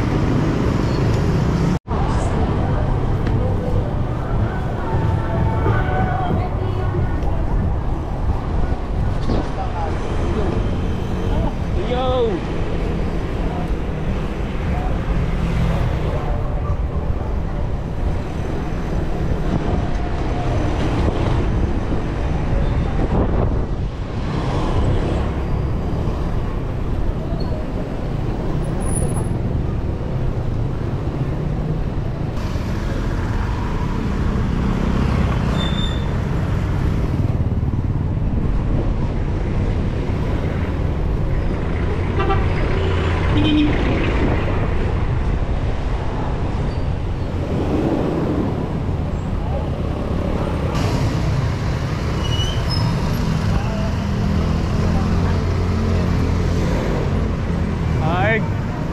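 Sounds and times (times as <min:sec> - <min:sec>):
city traffic: 0:00.0 - 0:58.9
wind noise: 0:01.9 - 0:11.8, 0:16.1 - 0:28.7, 0:35.2 - 0:52.0.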